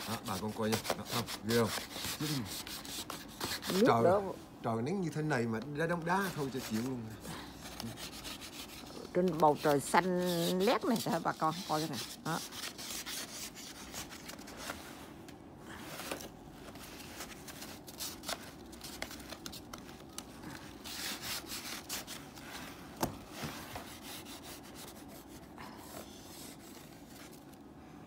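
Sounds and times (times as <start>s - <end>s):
rubbing and scraping: 0.0s - 4.0s, 6.1s - 15.0s.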